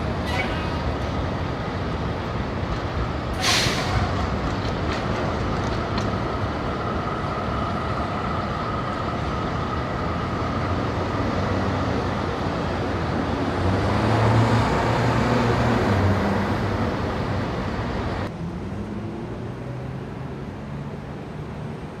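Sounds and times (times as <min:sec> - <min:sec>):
street traffic engines: 0:00.0 - 0:22.0.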